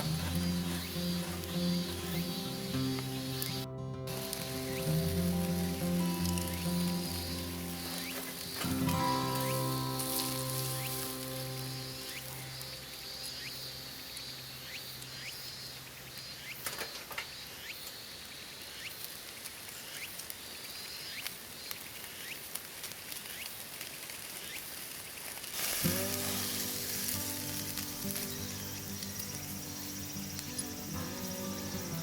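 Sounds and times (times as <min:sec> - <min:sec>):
background music: 0:00.0 - 0:14.8, 0:25.6 - 0:32.0
steady hiss: 0:00.0 - 0:32.0.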